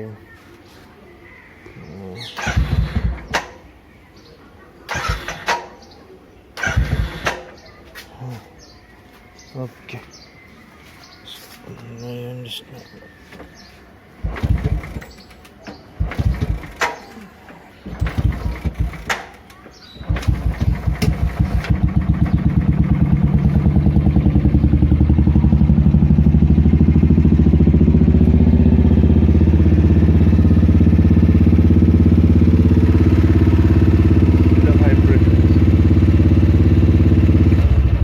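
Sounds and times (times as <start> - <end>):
motorcycle engine starting and idling: 2.3 - 3.7, 4.8 - 7.7, 14.2 - 38.0.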